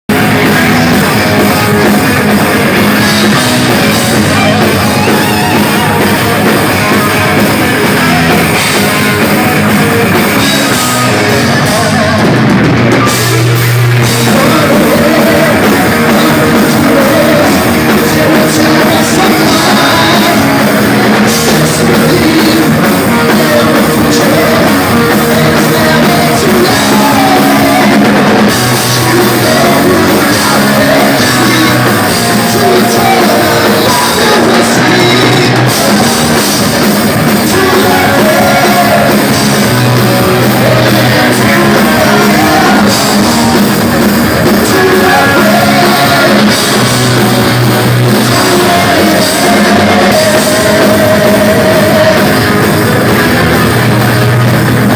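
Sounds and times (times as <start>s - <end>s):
distorted electric guitars: 0.0s - 54.9s
drum kit: 0.0s - 54.9s
heavy metal band playing live: 0.0s - 54.9s
person singing: 13.0s - 53.5s.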